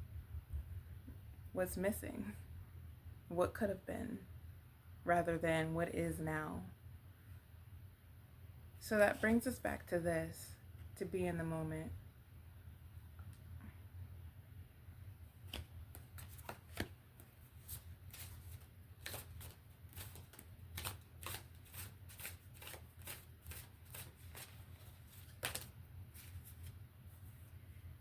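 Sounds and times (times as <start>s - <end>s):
cards being shuffled: 15.4s - 26.8s.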